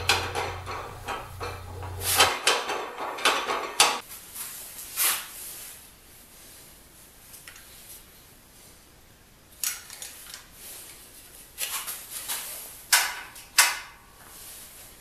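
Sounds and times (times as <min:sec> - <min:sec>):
low hum: 0:00.0 - 0:02.2
metal knocks and clanks: 0:00.0 - 0:04.0
metal scrape: 0:00.0 - 0:04.0.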